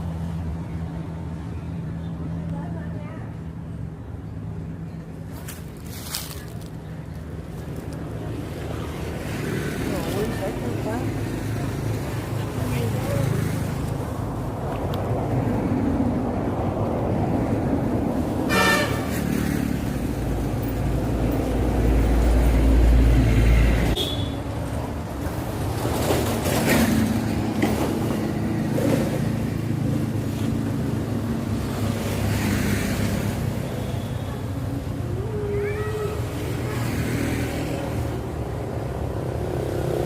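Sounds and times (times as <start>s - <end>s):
road traffic rumble: 0.0s - 40.0s
vehicle passing: 5.4s - 35.0s
car horn: 18.5s - 19.2s, 24.0s - 24.4s.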